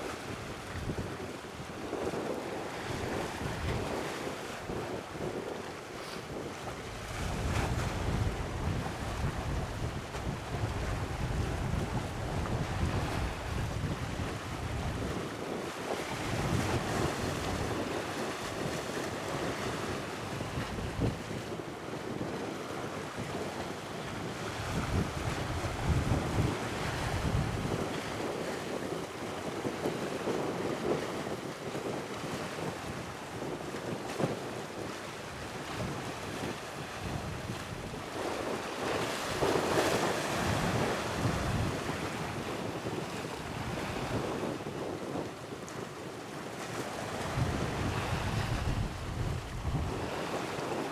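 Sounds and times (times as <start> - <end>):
wind buffeting microphone: 0.0 - 50.9
sea waves: 5.8 - 6.2, 46.6 - 50.9.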